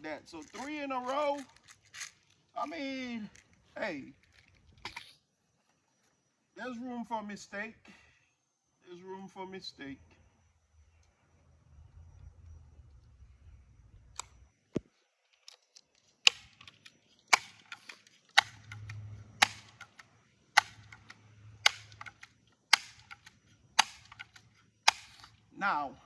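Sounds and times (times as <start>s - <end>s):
bb gun shots: 17.3s - 20.0s, 20.6s - 25.3s.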